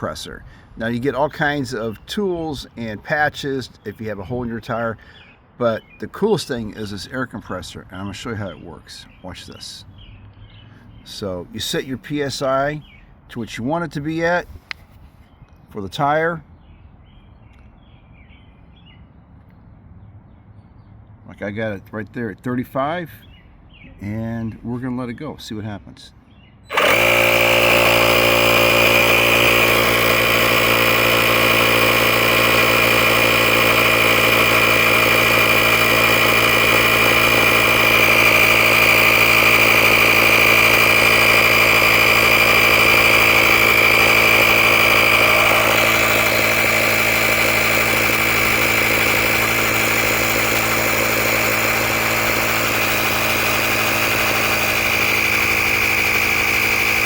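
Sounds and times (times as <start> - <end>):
air compressor running: 26.7 - 57.0.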